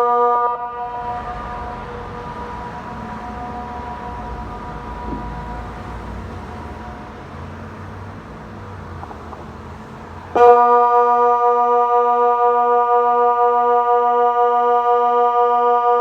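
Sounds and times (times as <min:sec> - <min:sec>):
loud steady low siren tone: 0:00.0 - 0:08.2, 0:10.3 - 0:16.0
faint distant siren tone: 0:00.0 - 0:09.0.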